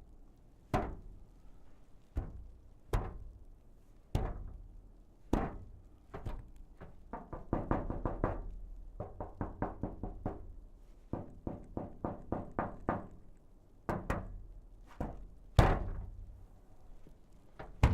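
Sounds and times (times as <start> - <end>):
banging on metal booth: 17.6 - 17.9.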